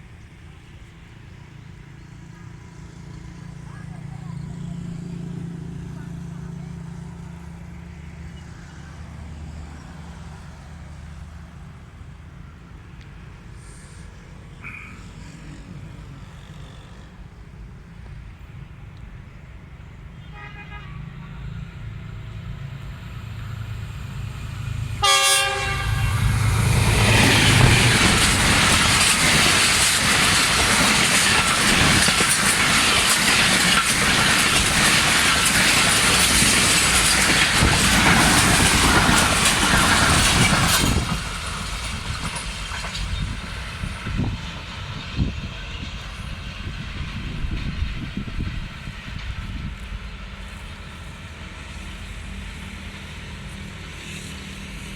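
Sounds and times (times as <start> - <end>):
locomotive engine hum: 0.0 - 54.9
train horn: 20.2 - 21.6, 25.0 - 26.7
train wheel and wind rush: 21.5 - 54.9.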